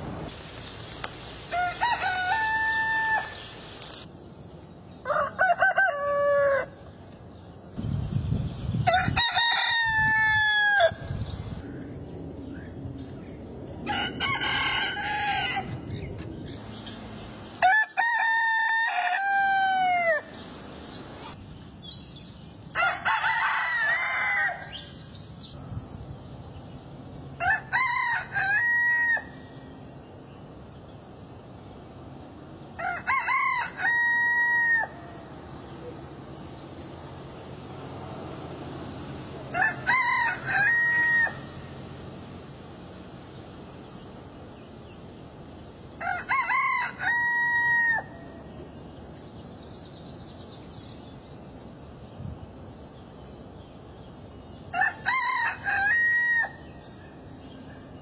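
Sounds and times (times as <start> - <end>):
rooster crowing: 1.5 - 3.5, 5.0 - 6.8, 8.8 - 11.2, 13.8 - 15.8, 17.6 - 20.4, 22.8 - 25.0, 27.4 - 29.4, 32.8 - 35.3, 39.5 - 41.7, 46.0 - 48.4, 54.7 - 56.7.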